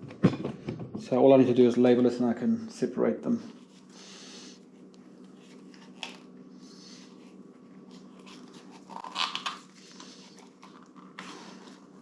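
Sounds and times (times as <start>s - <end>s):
steady low hum: 0.0s - 12.0s
crackling handling noises: 4.6s - 12.0s
adhesive tape pulled and torn: 8.2s - 9.6s.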